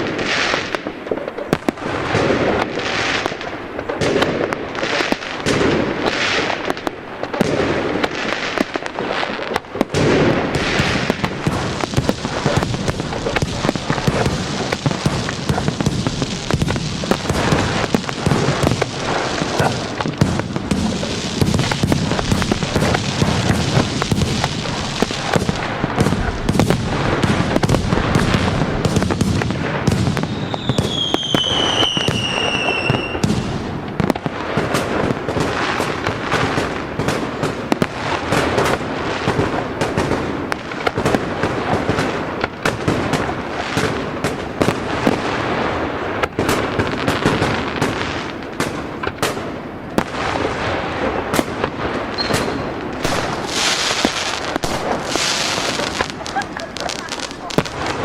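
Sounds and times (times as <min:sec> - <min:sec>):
fireworks bangs and crackling: 0:00.0 - 0:58.0
firework whistle falling in pitch: 0:30.2 - 0:33.4, 0:52.2 - 0:52.7.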